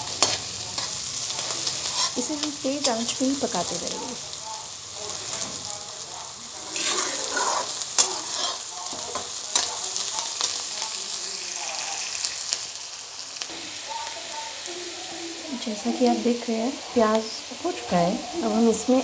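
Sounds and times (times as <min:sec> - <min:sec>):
spatula scraping a pan: 0:00.0 - 0:04.2, 0:06.6 - 0:11.0
onions sizzling in hot oil: 0:00.0 - 0:19.0.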